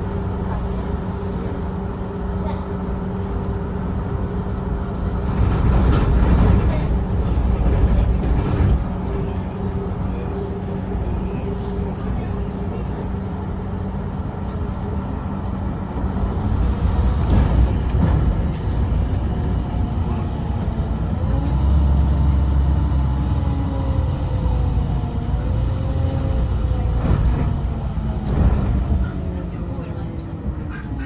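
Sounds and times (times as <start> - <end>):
bus engine and road rumble: 0.0 - 31.0.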